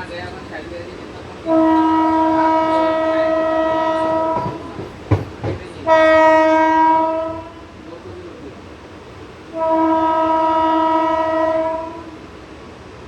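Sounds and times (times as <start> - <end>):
train horn blasts: 1.4 - 4.6, 5.8 - 7.7, 9.5 - 12.2
sharp knocks: 4.4 - 5.7.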